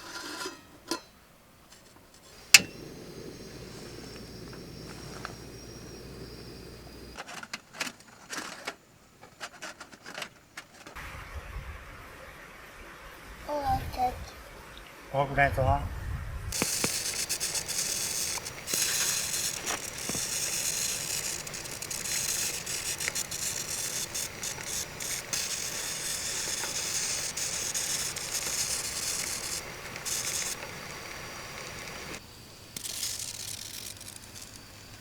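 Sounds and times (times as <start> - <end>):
rice sizzling and popping: 1.7 - 11.0, 16.5 - 35.0.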